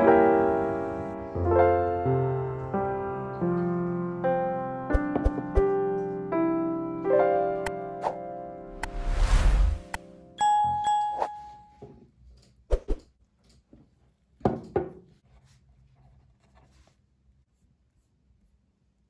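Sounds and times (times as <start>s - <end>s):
piano music: 0.0s - 11.8s
clear ding: 10.4s - 11.8s.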